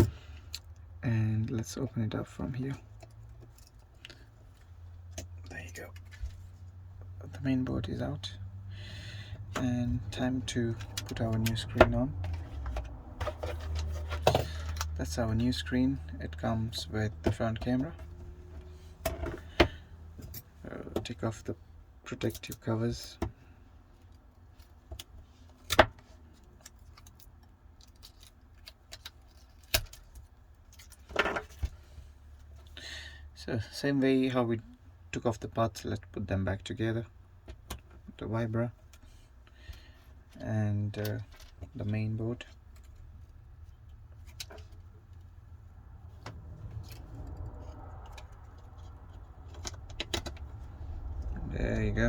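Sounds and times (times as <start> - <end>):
steady low hum: 31.3 - 52.0.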